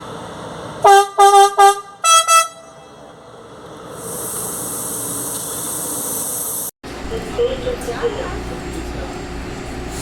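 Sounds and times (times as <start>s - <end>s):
train horn blasts: 0.8s - 3.0s.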